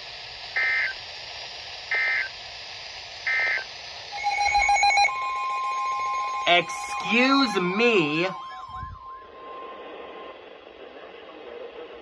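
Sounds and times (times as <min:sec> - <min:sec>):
steady alert tone: 0:04.1 - 0:09.4
rapid pulsing tone: 0:04.1 - 0:09.7
digital data tone bursts: 0:04.1 - 0:09.8.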